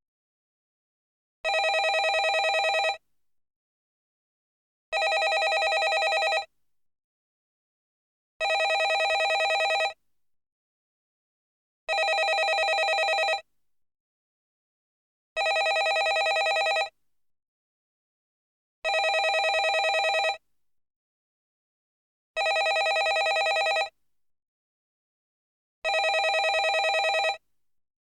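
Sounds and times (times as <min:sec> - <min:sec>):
landline telephone ringing: 0:01.5 - 0:03.0, 0:05.0 - 0:06.5, 0:08.4 - 0:10.0, 0:11.9 - 0:13.4, 0:15.4 - 0:16.9, 0:18.9 - 0:20.4, 0:22.4 - 0:23.9, 0:25.9 - 0:27.4.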